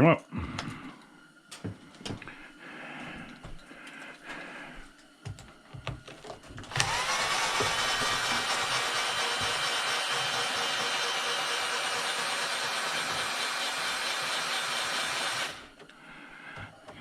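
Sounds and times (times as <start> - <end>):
motor running with rushing hiss: 6.7 - 15.8.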